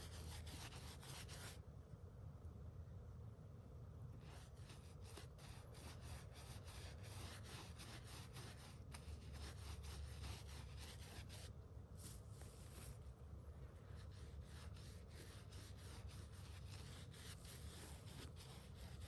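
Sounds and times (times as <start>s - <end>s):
paintbrush scrubbing on wood: 4.3s - 13.1s, 13.7s - 19.0s.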